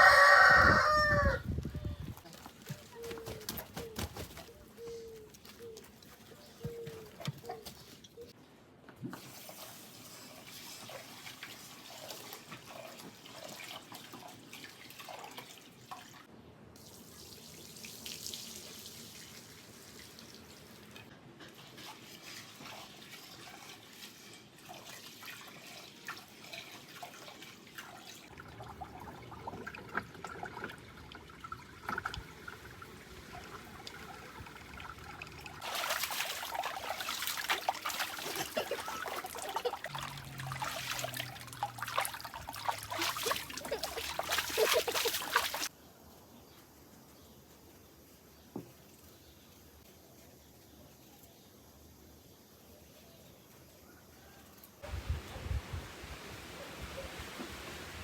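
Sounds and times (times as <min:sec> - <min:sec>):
water running and splashing: 0:21.8 - 0:45.7.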